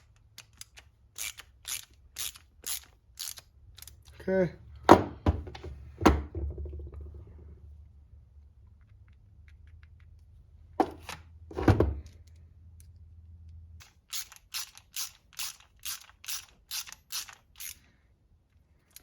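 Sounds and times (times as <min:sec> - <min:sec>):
hand tool ratcheting: 0:00.3 - 0:04.2, 0:13.8 - 0:17.8
metal tools knocking on workbench: 0:10.8 - 0:12.0.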